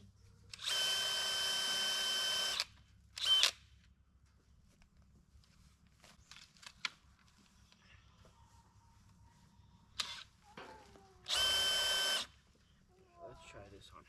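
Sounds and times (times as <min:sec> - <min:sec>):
cordless drill running: 0:00.6 - 0:03.6, 0:11.3 - 0:12.3.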